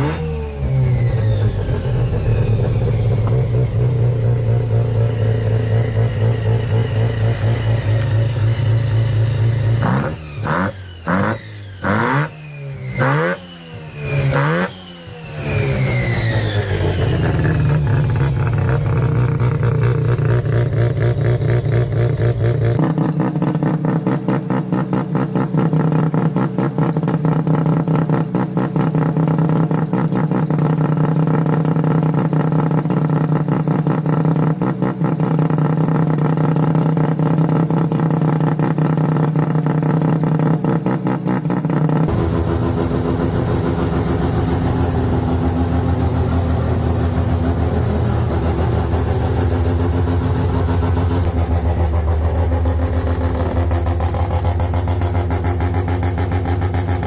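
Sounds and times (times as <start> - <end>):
rotary engine idling: 35.1 - 57.0.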